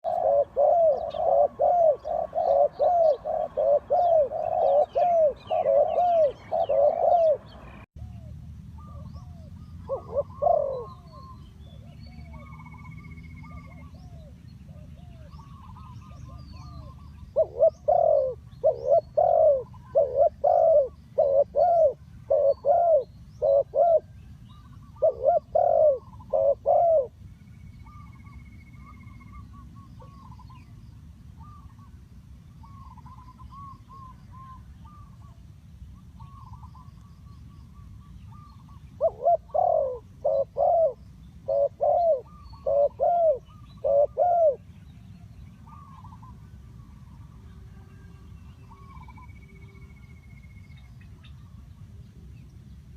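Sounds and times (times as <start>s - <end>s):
dove cooing: 0.0s - 27.2s, 38.3s - 44.7s, 45.6s - 46.5s
small birds chirping: 0.0s - 32.0s, 32.6s - 52.9s.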